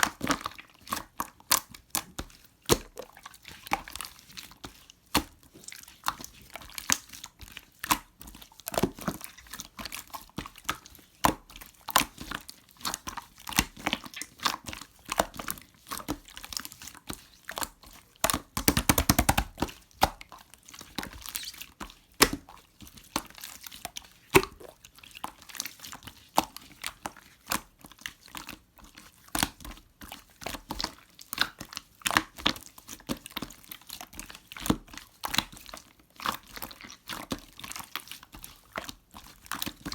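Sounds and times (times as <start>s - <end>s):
slime squished by hand: 11.4s - 27.8s.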